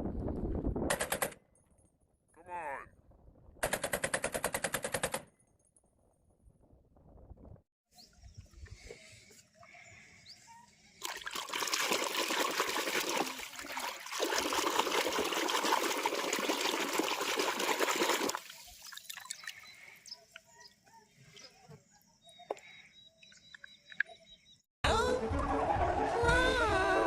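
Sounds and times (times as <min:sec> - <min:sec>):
water splashing over plastic toys: 0:11.0 - 0:19.6.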